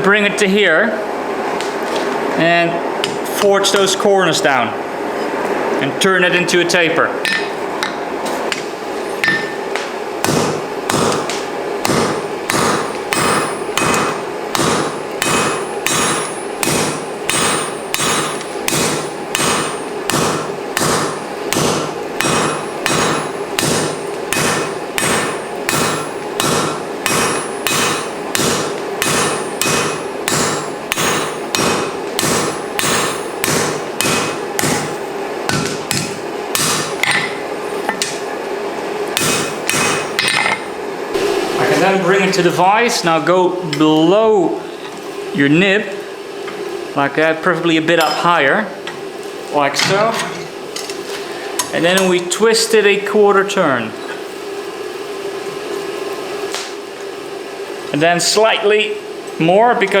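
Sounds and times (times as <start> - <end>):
hammer striking steel on anvil: 9.2 - 9.6, 10.2 - 38.2, 39.2 - 40.7
anvil ringing: 10.2 - 37.4, 39.2 - 40.6.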